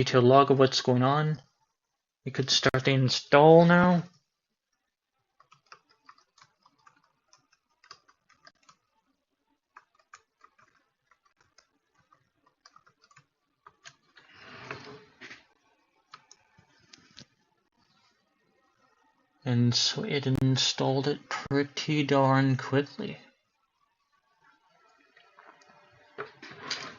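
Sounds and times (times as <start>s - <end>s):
keyboard typing: 5.3s - 14.9s, 15.9s - 17.4s.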